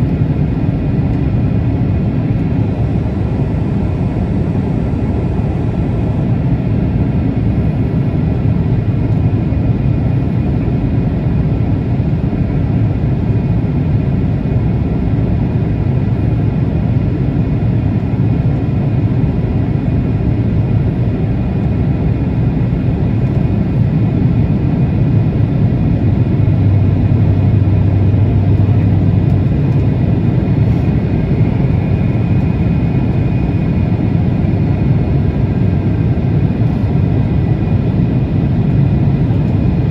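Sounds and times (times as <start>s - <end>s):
jet engine rumble: 0.0s - 39.9s
faint steady whine: 17.6s - 39.9s.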